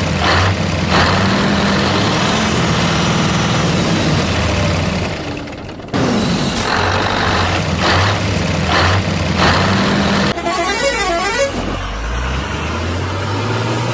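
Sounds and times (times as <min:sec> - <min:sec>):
heavy vehicle engine running: 0:00.0 - 0:13.9
horn tune: 0:10.3 - 0:11.7.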